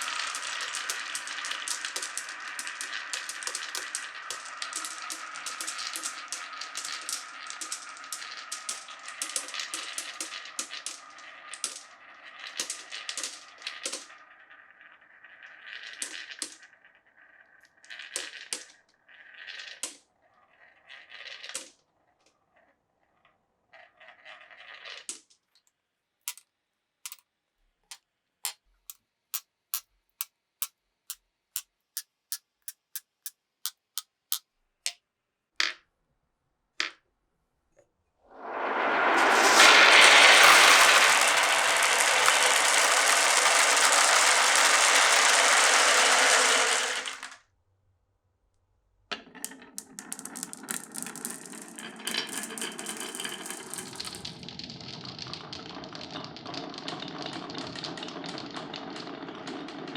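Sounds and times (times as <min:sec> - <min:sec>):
marbles rolling in wooden run: 0:00.0 - 0:25.6, 0:38.3 - 0:47.4, 0:49.2 - 0:59.9.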